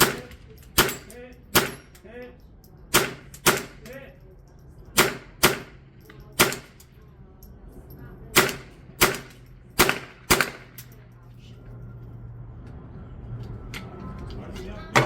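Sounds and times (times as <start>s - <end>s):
rimfire gunshots: 5.0s - 5.8s, 8.4s - 10.8s.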